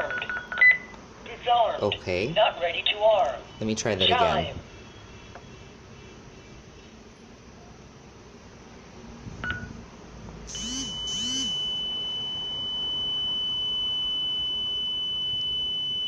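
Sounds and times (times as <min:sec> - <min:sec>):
swooping chirps: 0:10.5 - 0:11.7
high-pitched alarm tone: 0:10.5 - 0:16.0.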